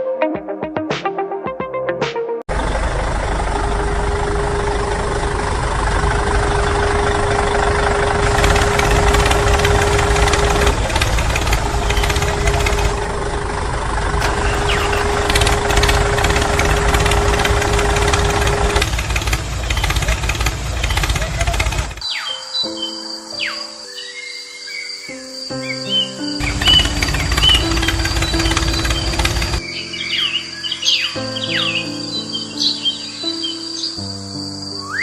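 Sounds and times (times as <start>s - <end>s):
steady humming tone: 2.5s - 19.7s
engine rumbling: 2.5s - 22.0s, 26.4s - 29.6s.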